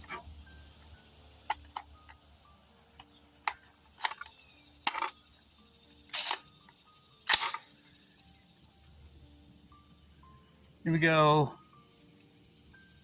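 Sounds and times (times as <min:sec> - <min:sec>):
rifle mechanical clicks: 0:06.1 - 0:06.5, 0:07.3 - 0:07.7.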